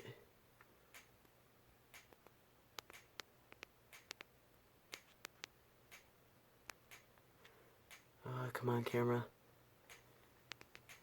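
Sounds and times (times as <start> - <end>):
faint sharp clicks: 2.0 - 4.3, 6.7 - 8.1.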